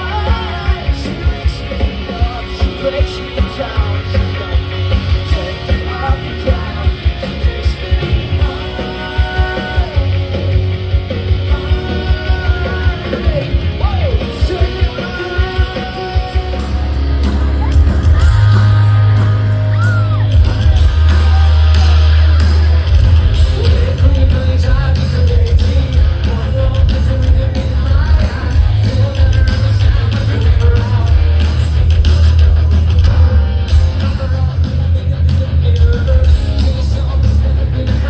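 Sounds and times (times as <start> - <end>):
rock band playing: 0.0 - 38.0
person yelling and singing: 11.4 - 31.4.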